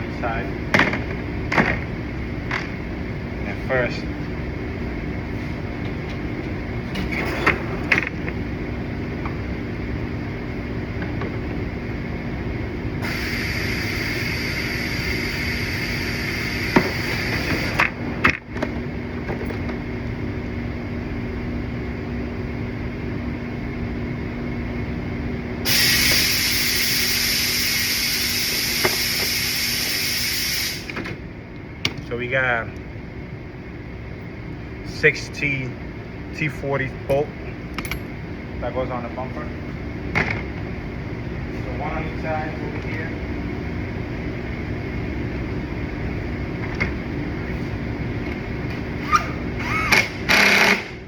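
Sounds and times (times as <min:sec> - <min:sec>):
steady low hum: 0:00.0 - 0:51.0
air jet hissing: 0:13.0 - 0:17.8, 0:25.7 - 0:31.0.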